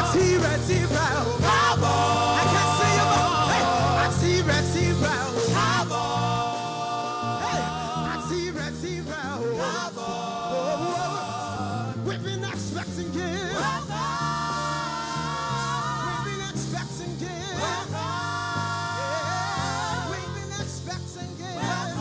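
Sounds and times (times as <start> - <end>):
bass line: 0.0 - 22.0.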